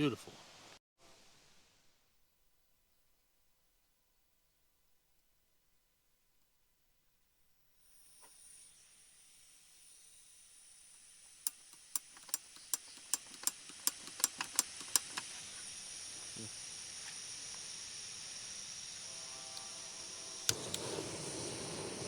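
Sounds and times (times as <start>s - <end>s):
steady hiss: 7.7s - 22.0s
sharp clicks: 11.4s - 15.3s, 20.4s - 21.5s.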